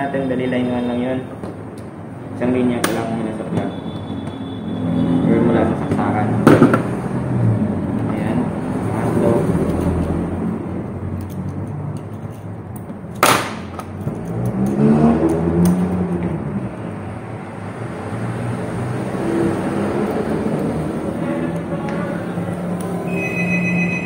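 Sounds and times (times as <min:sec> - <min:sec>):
engine-like sound rising and falling: 0:14.3 - 0:21.6.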